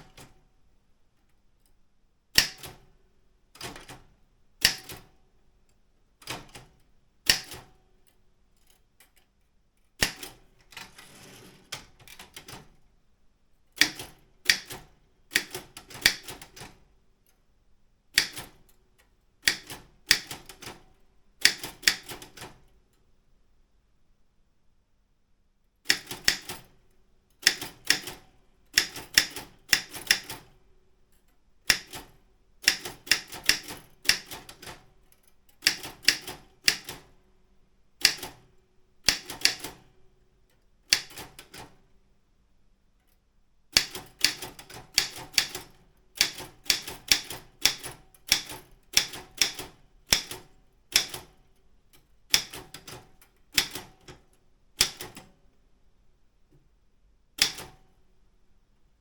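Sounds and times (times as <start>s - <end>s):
typewriter keystrokes: 3.6s - 5.1s, 6.2s - 7.8s, 10.0s - 12.8s, 13.8s - 16.8s, 18.1s - 18.7s, 19.4s - 22.7s, 25.9s - 26.8s, 27.4s - 30.6s, 31.7s - 34.9s, 35.6s - 37.2s, 38.0s - 39.9s, 40.9s - 41.8s, 43.7s - 51.4s, 52.3s - 55.4s, 57.4s - 57.9s.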